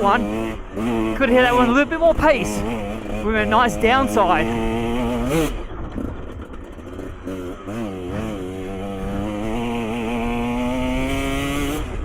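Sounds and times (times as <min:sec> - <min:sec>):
dirt bike engine revving: 0:00.0 - 0:12.0.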